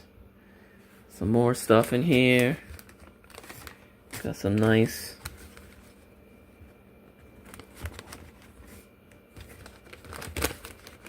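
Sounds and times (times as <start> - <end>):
paper packaging rustling: 1.4 - 6.2, 7.2 - 11.0.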